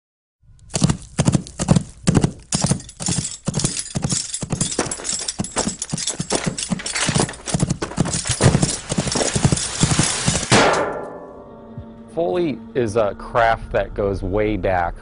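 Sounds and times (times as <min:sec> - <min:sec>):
horse hoofbeats: 0:00.7 - 0:10.7.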